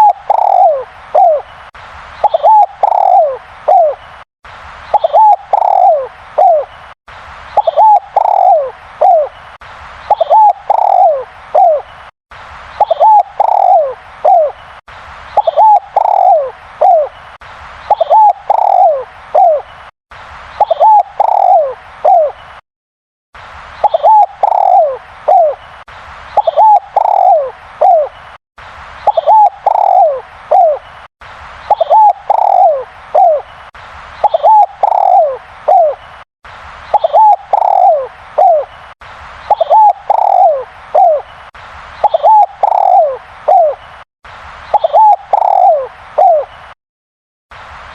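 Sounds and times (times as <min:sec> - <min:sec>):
dove cooing: 0:00.0 - 0:01.5, 0:02.2 - 0:04.0, 0:04.9 - 0:06.7, 0:07.6 - 0:09.3, 0:10.1 - 0:11.8, 0:12.8 - 0:14.6, 0:15.4 - 0:17.1, 0:17.9 - 0:19.6, 0:20.6 - 0:22.4, 0:23.8 - 0:25.6, 0:26.4 - 0:28.1, 0:29.1 - 0:30.8, 0:31.7 - 0:33.4, 0:34.2 - 0:36.0, 0:36.9 - 0:38.7, 0:39.5 - 0:41.2, 0:42.0 - 0:43.8, 0:44.7 - 0:46.5.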